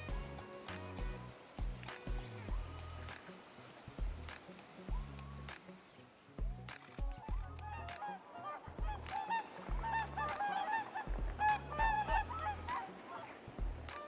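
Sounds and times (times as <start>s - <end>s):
swans honking: 0.0s - 14.0s
low rumbles: 8.7s - 9.1s, 11.1s - 12.7s, 13.6s - 13.9s.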